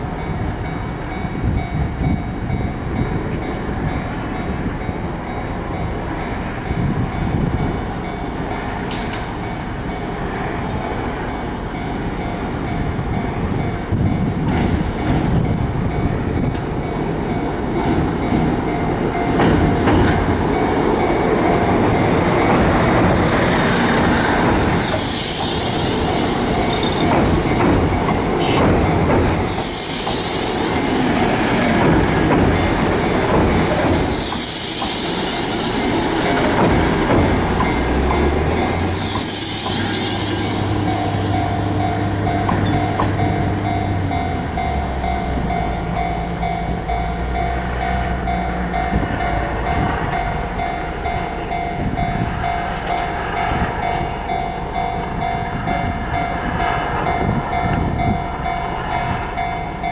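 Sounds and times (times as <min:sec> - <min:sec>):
train wheels rumbling on rails: 0:00.0 - 0:59.9
high wheel hiss: 0:22.6 - 0:46.2.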